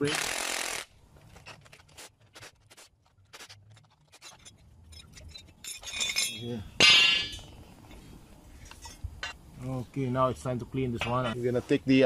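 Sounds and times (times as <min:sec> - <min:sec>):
metal clicks and scrapes: 0:01.2 - 0:06.3.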